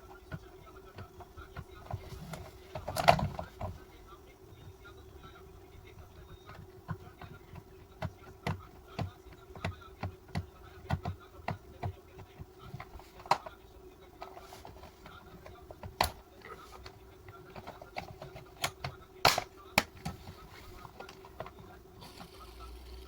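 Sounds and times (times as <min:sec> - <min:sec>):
faint steady hum: 0:00.0 - 0:23.0
plastic toy parts clicking: 0:15.4 - 0:20.3.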